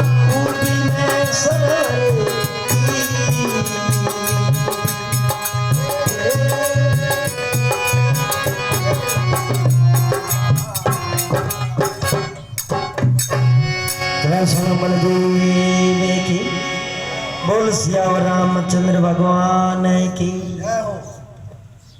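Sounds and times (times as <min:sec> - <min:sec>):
hand drum beat: 0:00.0 - 0:13.7
sustained instrumental melody: 0:00.0 - 0:19.9.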